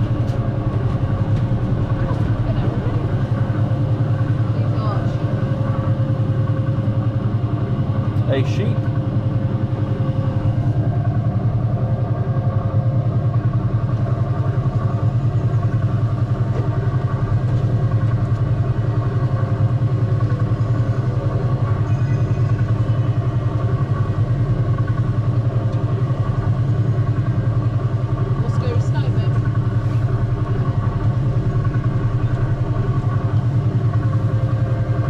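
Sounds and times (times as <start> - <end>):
ride car engine throbbing hum: 0.0 - 35.0.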